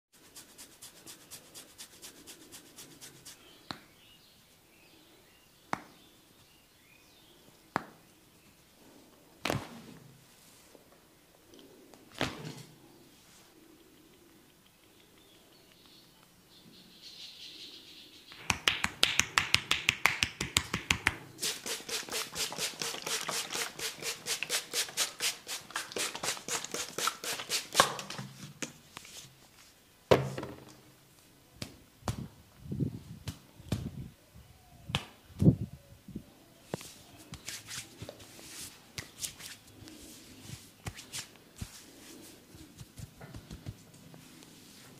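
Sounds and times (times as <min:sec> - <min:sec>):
hands tapping and slapping a head: 0:05.7 - 0:06.0, 0:18.3 - 0:21.2, 0:25.7 - 0:28.8, 0:31.6 - 0:32.3, 0:34.9 - 0:35.2, 0:42.8 - 0:43.8.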